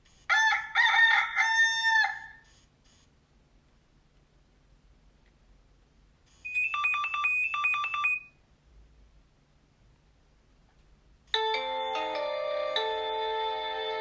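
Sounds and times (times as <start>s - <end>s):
polyphonic ringtone chords: 11.4s - 14.0s.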